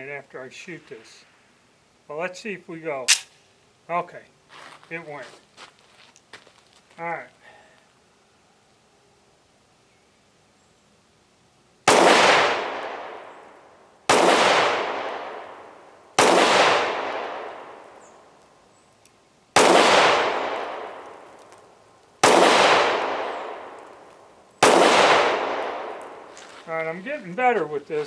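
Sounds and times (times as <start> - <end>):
pistol shots with echo: 11.9 - 13.3, 14.1 - 18.0, 19.6 - 21.3, 22.2 - 23.9, 24.6 - 26.3.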